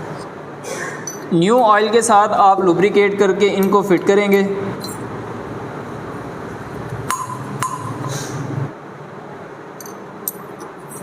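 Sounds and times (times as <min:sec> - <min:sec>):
light metallic clinks: 0:01.0 - 0:01.3.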